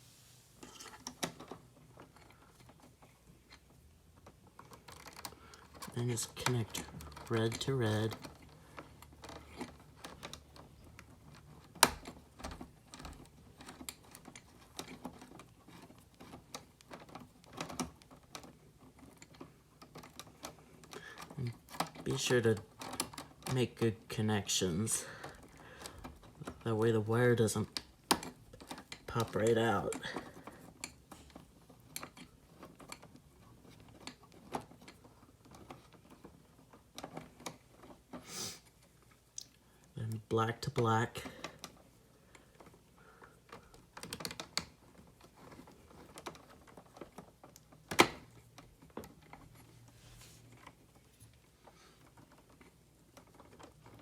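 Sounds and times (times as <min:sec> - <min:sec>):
soft rustling of wire: 0:00.0 - 0:54.0
plastic parts clicking: 0:00.6 - 0:54.0
small clicks and taps of wiring: 0:25.2 - 0:38.2, 0:38.8 - 0:49.8.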